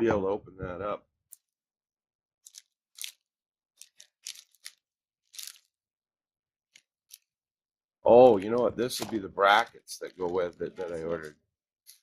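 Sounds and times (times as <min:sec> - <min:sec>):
packaging crinkling and ripping: 0:02.4 - 0:05.8, 0:06.8 - 0:07.3, 0:09.5 - 0:11.3.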